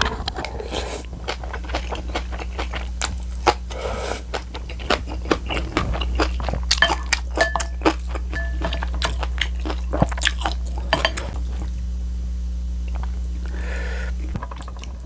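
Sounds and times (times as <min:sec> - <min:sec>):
crisp bites and wet chewing: 0:00.0 - 0:11.7
steady low hum: 0:00.0 - 0:15.0.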